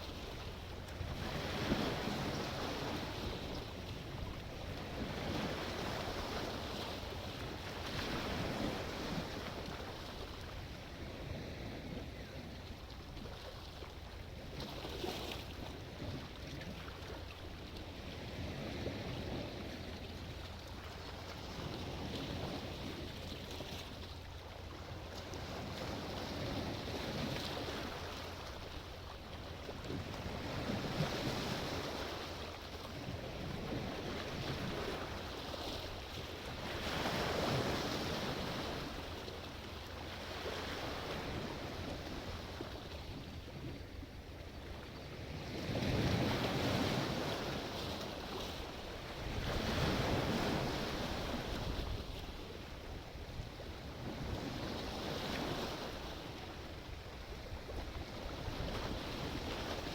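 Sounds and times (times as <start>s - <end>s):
wind noise on microphone: 0.0s - 13.3s, 44.4s - 59.9s
sea waves breaking: 0.0s - 53.0s.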